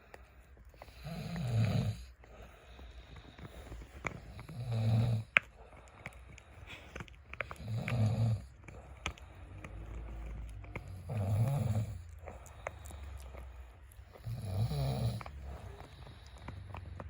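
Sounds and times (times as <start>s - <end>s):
dog gnawing a chew stick: 0.0s - 17.0s
man snoring: 0.9s - 2.1s, 4.4s - 5.3s, 7.6s - 8.5s, 10.8s - 12.1s, 14.2s - 16.5s.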